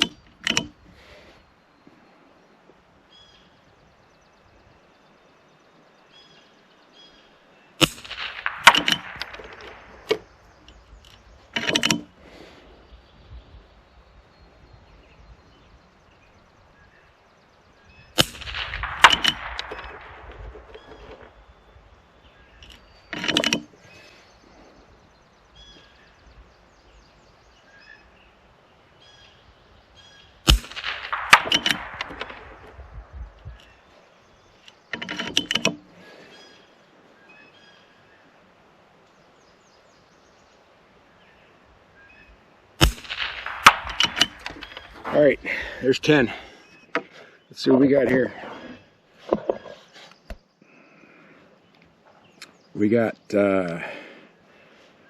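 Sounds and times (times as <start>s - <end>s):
rifle bolt clatter: 0.0s - 0.8s, 7.8s - 12.1s, 18.2s - 21.3s, 22.6s - 23.7s, 30.5s - 33.7s, 34.6s - 35.9s, 42.8s - 45.2s
rifle shots: 7.8s - 10.6s, 18.2s - 21.6s, 30.4s - 33.7s, 42.8s - 45.1s.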